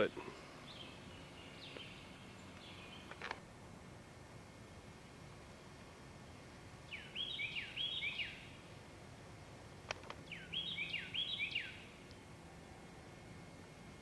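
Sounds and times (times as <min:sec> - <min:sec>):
songbird whistling phrases: 0:06.9 - 0:08.5, 0:10.3 - 0:11.9.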